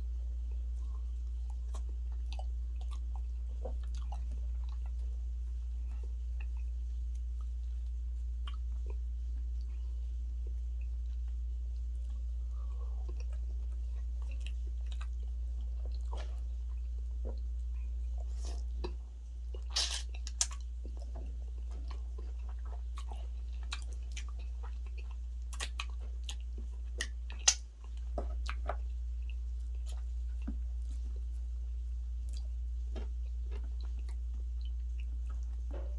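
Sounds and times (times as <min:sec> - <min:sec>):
steady low hum: 0:00.0 - 0:35.9
chewing and biting food: 0:00.8 - 0:09.6, 0:10.4 - 0:31.5
wet mouth clicks and smacks: 0:19.6 - 0:21.2, 0:25.6 - 0:28.8
loud snaps: 0:27.4 - 0:27.6.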